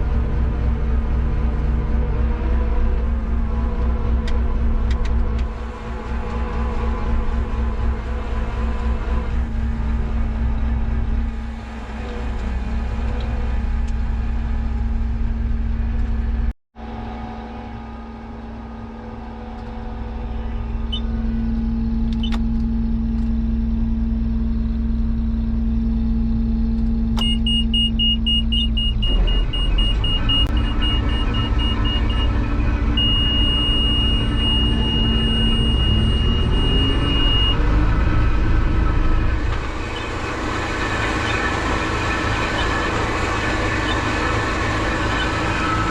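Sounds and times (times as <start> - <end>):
combine harvester running: 0.0 - 45.9
high electronic beeping: 27.2 - 37.8, 39.6 - 45.9.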